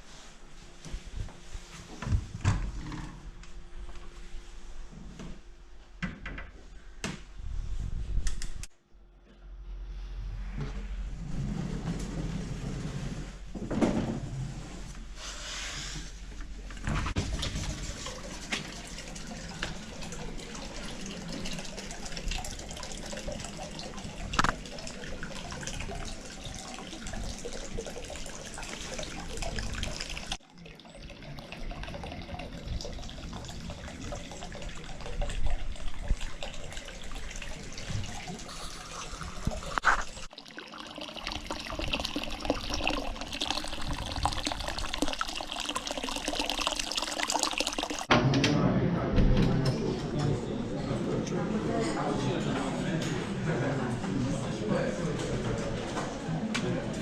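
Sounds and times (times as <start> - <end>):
water pouring into a bath: 17.2 - 48.1.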